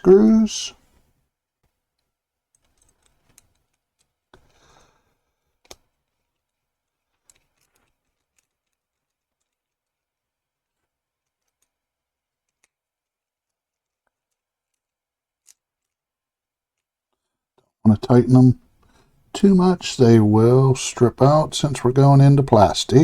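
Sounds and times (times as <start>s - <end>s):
small parts clicking: 2.0s - 16.0s.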